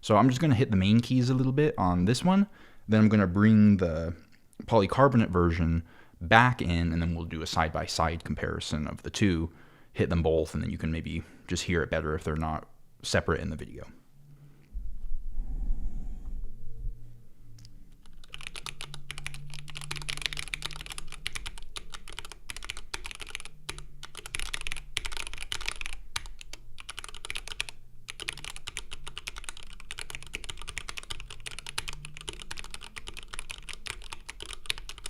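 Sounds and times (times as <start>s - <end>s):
keyboard typing clacks: 18.0s - 35.0s.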